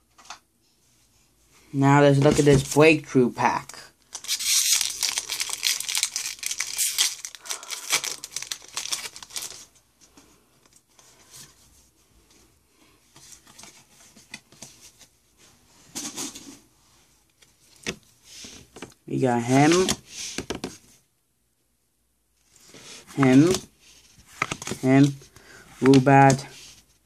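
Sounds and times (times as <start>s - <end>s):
wrapper and cards rustling: 3.4s - 9.9s, 22.4s - 26.9s
foil wrapper tearing and crinkling: 4.1s - 9.7s.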